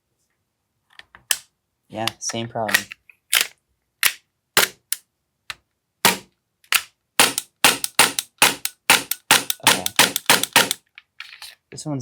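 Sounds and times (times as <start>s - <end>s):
airsoft pistol firing: 6.1s - 10.8s.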